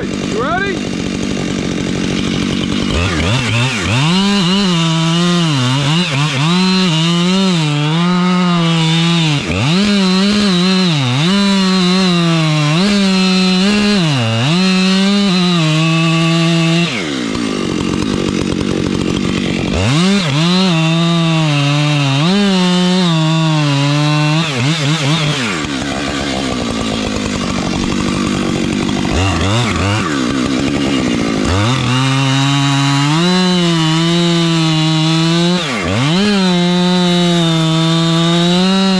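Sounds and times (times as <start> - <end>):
rough low engine sound: 0.0 - 6.4, 25.1 - 31.9
chainsaw cutting wood: 0.0 - 38.9.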